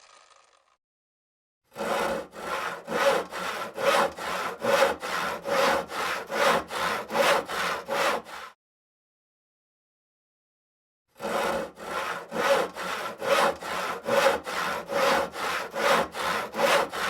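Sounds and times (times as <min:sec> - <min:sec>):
hand saw cutting wood: 0:01.7 - 0:08.6, 0:11.1 - 0:17.0.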